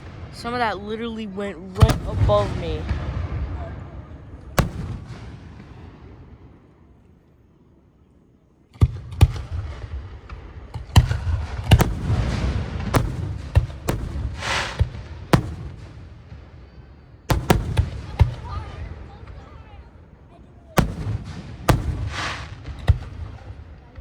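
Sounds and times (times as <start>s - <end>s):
fireworks bangs: 0.0s - 6.6s, 8.8s - 19.6s, 20.7s - 24.0s
fireworks hissing and crackling: 11.0s - 16.3s, 20.8s - 23.5s.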